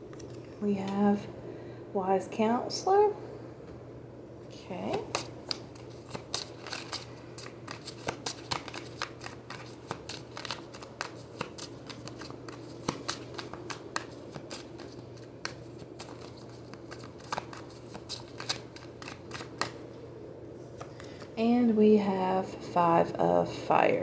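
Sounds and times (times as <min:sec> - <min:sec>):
cards being shuffled: 0:04.9 - 0:19.9.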